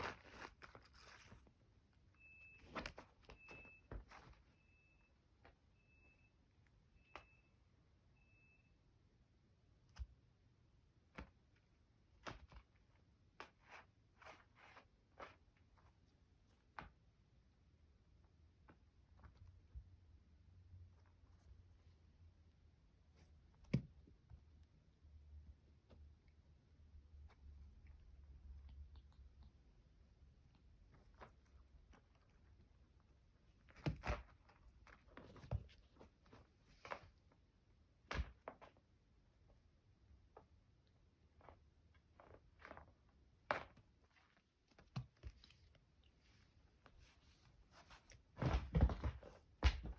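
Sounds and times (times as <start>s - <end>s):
kitten rustling and tapping: 0.0s - 4.5s, 27.2s - 39.0s, 41.3s - 49.9s.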